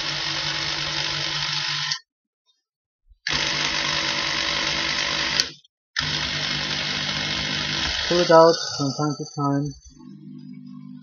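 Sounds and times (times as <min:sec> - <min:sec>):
electric drill boring into wood: 0:00.0 - 0:02.0, 0:03.3 - 0:08.5.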